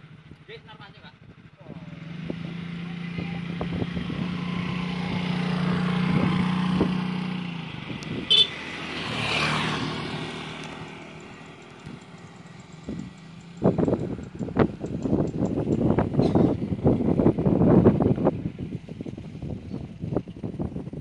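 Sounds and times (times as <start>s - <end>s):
engine humming: 0.0s - 21.0s
wind buffeting microphone: 1.2s - 21.0s
vehicle passing by: 1.6s - 21.0s
short horn toot: 8.3s - 8.6s.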